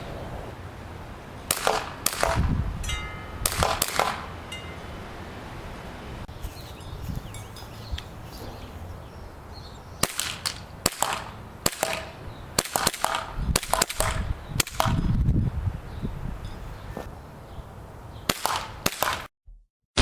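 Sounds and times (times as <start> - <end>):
airsoft pistol shots: 1.5 - 2.5, 3.4 - 4.3, 10.0 - 15.0, 18.3 - 19.3.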